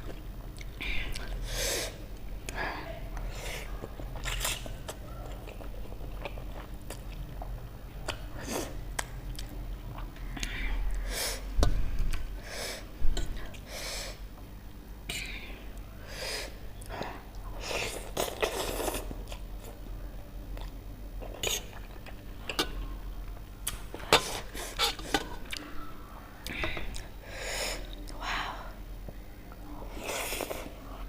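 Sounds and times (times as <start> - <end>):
person chewing crunchy food: 3.9 - 11.0.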